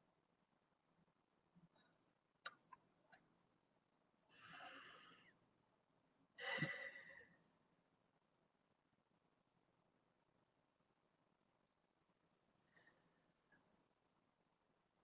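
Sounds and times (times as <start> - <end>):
person breathing softly: 4.3 - 5.4, 6.4 - 7.4, 12.6 - 13.3.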